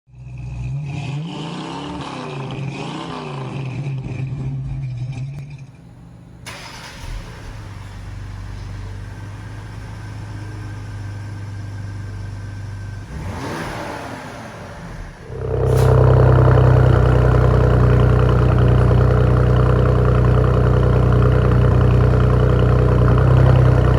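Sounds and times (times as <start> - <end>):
car engine revving: 0.1 - 23.9
car engine idling: 5.4 - 23.9.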